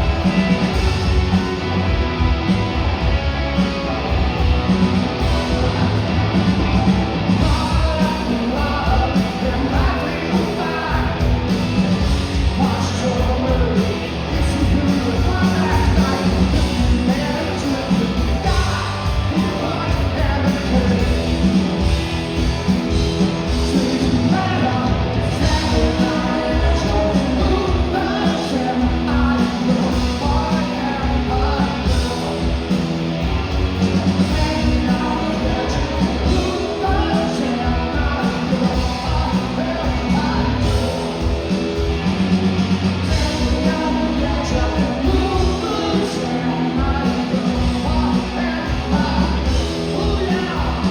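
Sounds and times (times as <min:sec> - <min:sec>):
rock band playing loudly: 0:00.0 - 0:50.9
person singing: 0:23.5 - 0:32.7, 0:33.9 - 0:41.4.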